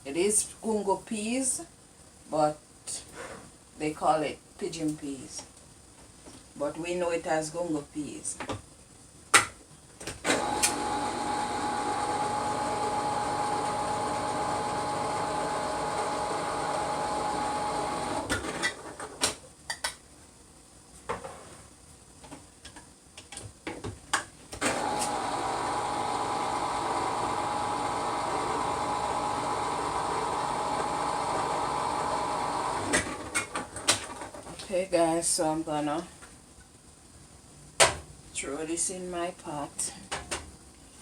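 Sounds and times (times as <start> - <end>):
electric can opener motor whine: 10.3 - 18.7, 24.6 - 33.5.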